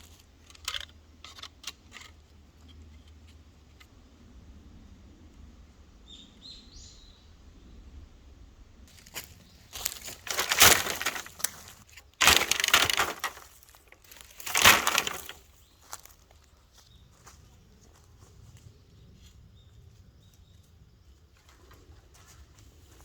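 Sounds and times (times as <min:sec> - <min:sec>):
crunching rustling bursts: 0:08.9 - 0:16.1.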